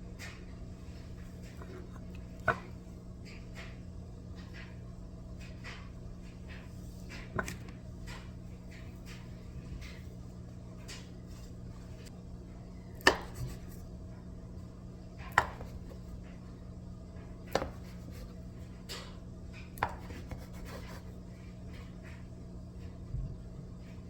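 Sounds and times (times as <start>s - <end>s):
steady low hum: 0.0s - 24.0s
knife on cutting board: 13.0s - 13.8s, 19.8s - 21.2s.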